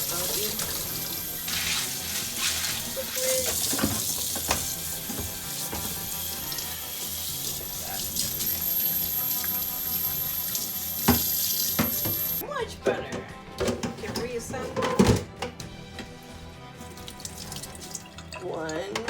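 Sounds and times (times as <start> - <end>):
tap water running into sink: 0.0 - 12.4, 16.8 - 19.0.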